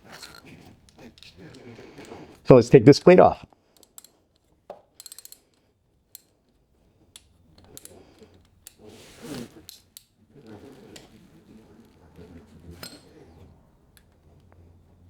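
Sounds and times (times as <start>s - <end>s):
tool scraping against engine: 0.0s - 2.5s, 7.4s - 15.0s
ratchet wrench clicking: 3.8s - 6.3s.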